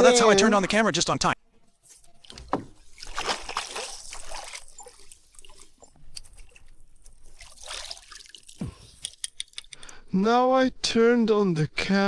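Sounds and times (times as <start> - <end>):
water splashing and trickling: 1.9 - 9.9
small clicks: 9.0 - 10.0.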